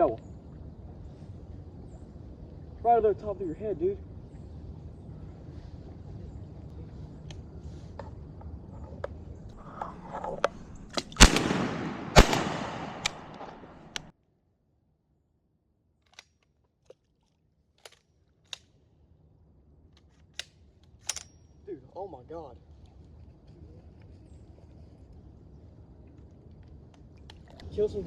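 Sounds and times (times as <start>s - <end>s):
shotgun shots with echo: 11.0s - 14.1s
light clicks: 12.2s - 14.1s.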